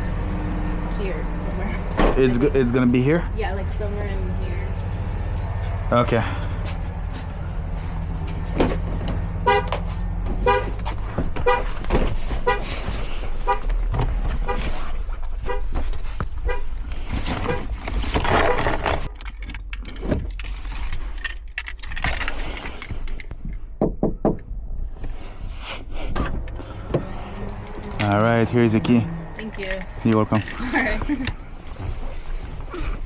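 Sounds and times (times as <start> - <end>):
car alarm horn honking: 9.4 - 13.7, 14.4 - 15.8.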